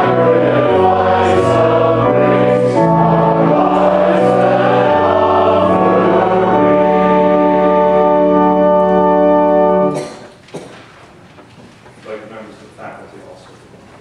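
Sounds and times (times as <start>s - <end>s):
church organ and singing voices: 0.0s - 10.2s.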